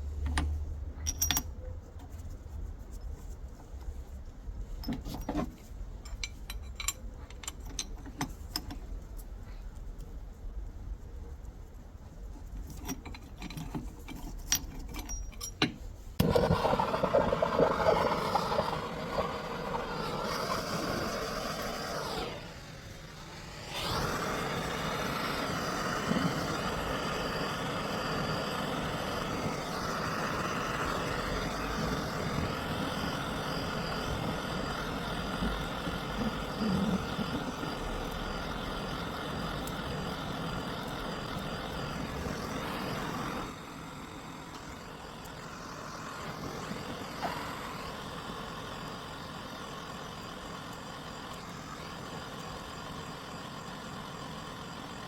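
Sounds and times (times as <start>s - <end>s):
mechanical running noise: 16.2s - 55.0s.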